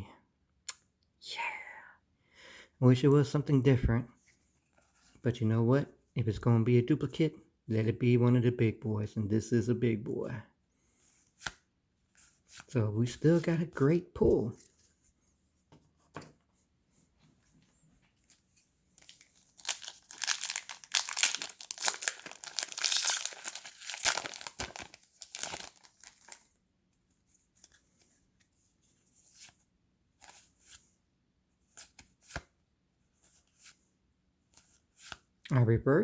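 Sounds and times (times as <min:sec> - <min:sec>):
foil wrapper tearing and crinkling: 0:19.0 - 0:26.4
trading cards clicking and rustling: 0:19.0 - 0:26.4.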